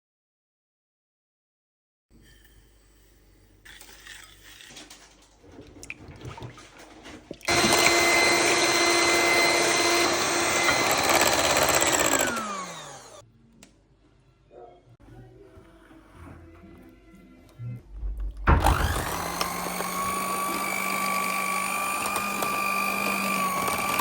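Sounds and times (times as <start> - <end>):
electric mixer whining: 7.5 - 13.2, 18.6 - 24.0.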